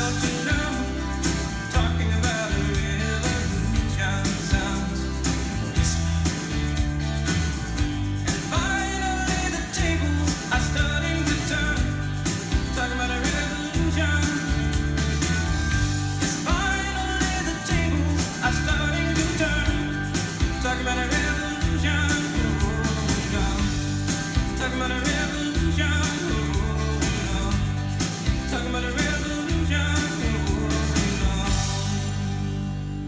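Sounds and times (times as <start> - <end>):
song from vinyl record: 0.0 - 33.0.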